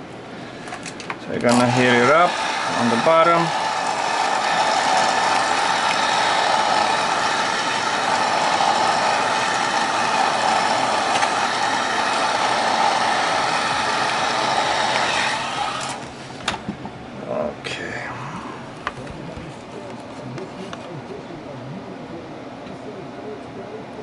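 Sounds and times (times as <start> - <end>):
heat gun blowing: 1.5 - 16.5.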